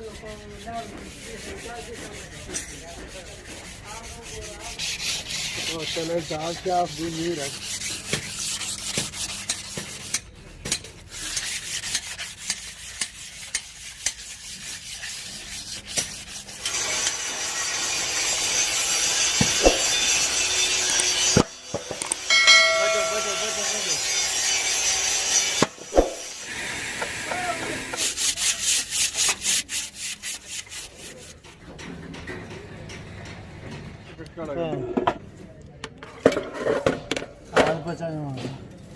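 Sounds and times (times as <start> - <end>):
abrasive scrubbing on metal: 0.0 - 21.5, 22.3 - 26.6, 27.8 - 31.4
short metallic ring: 22.3 - 24.3.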